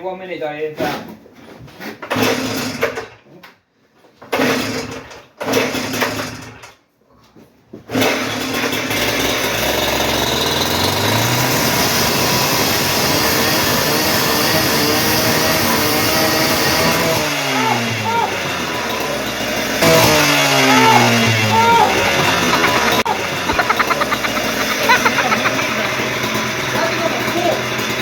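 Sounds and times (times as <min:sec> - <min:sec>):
cut-off saw engine starting and revving: 0:08.0 - 0:28.0.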